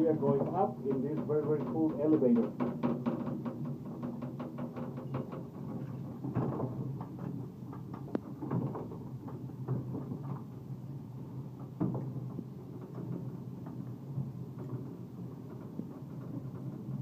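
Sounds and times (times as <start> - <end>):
sharp knocks: 0.2 - 5.5.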